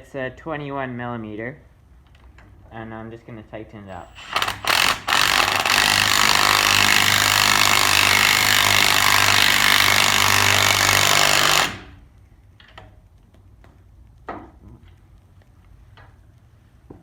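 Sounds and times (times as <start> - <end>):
impact wrench hammering: 4.0 - 12.0.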